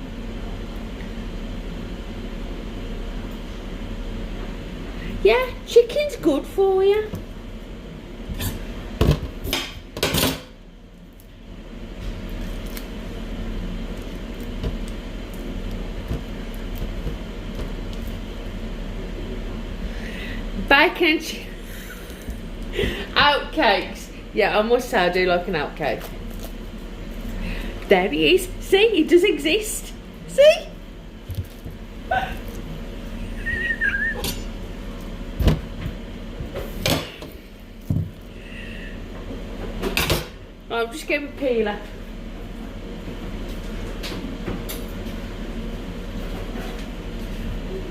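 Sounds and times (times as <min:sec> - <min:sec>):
kitchen appliance whirring: 0:11.5 - 0:40.3
wavering whistle-like high tone: 0:33.3 - 0:34.4.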